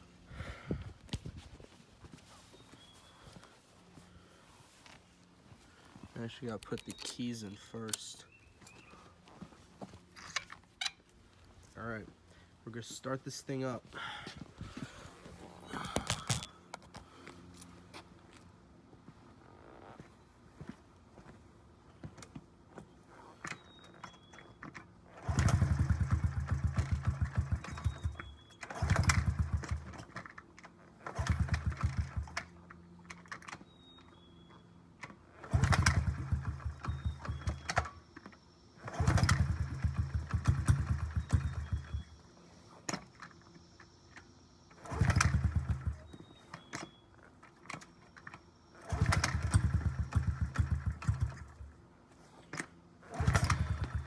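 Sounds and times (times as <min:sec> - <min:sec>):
small motorcycle engine kick-starting: 0:15.5 - 0:17.2, 0:23.1 - 0:54.0.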